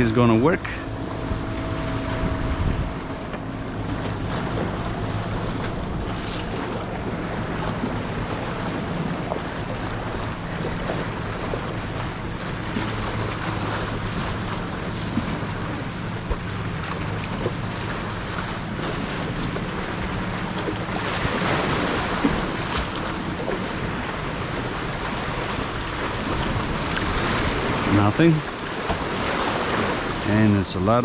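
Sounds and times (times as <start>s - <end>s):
wind buffeting microphone: 0.0s - 30.8s
low steady hum: 0.0s - 31.0s
sea water washing and splashing: 0.0s - 31.0s.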